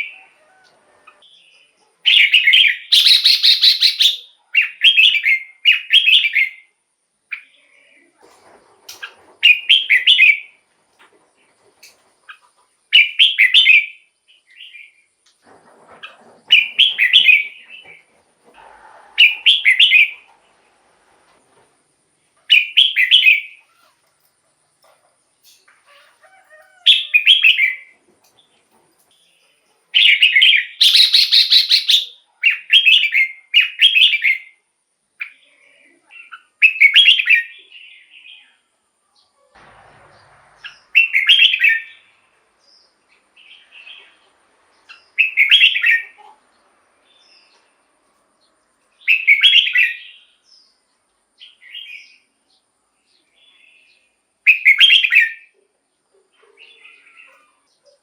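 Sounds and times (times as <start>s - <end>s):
bird singing warbled phrases: 1.2s - 8.1s, 19.2s - 20.3s, 22.5s - 24.0s, 29.1s - 34.6s, 35.2s - 38.6s, 42.7s - 46.4s, 49.0s - 50.8s, 53.2s - 58.0s.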